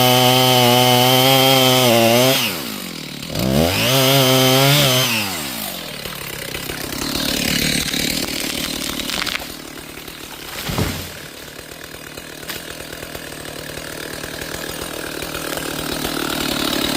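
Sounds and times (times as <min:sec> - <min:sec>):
chainsaw idling: 0:00.0 - 0:16.9
chainsaw revving: 0:00.0 - 0:16.9.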